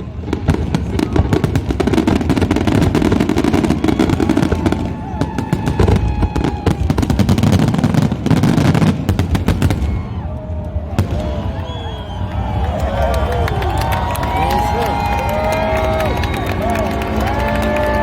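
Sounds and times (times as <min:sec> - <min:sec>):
fireworks cracking and popping: 0:00.0 - 0:10.2
rumble of fireworks booms: 0:00.0 - 0:13.1.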